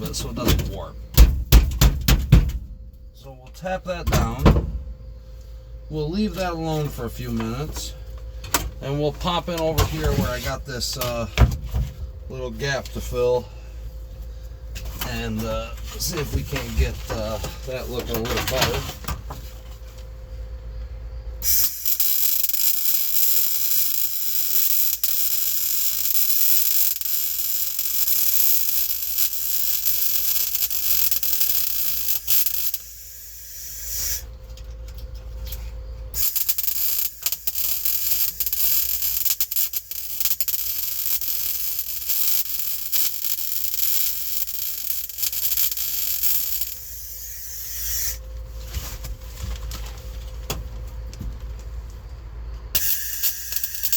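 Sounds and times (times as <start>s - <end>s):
welding arc crackling: 21.4s - 34.3s, 36.1s - 48.2s, 52.8s - 53.9s.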